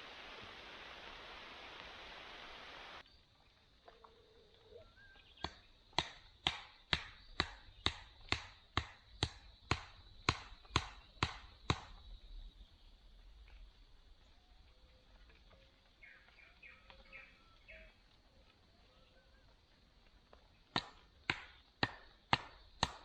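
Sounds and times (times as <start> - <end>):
sharp chopping strikes: 5.4 - 12.0, 20.8 - 23.0.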